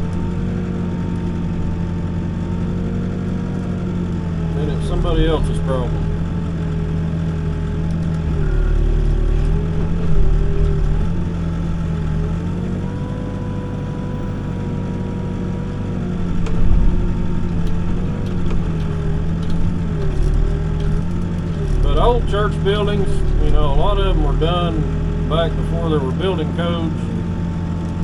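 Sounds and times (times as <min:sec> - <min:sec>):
backhoe diesel engine digging: 0:00.0 - 0:28.0
low bump: 0:04.4 - 0:14.6, 0:16.1 - 0:27.4.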